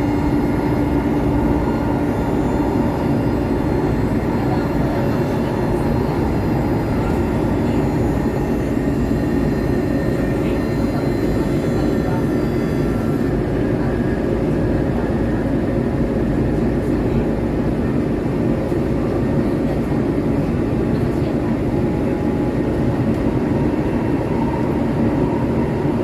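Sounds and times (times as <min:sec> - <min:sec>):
faint high steady tones: 0:00.0 - 0:13.3
tram wheels rumbling on rails: 0:00.0 - 0:15.6, 0:16.2 - 0:26.0.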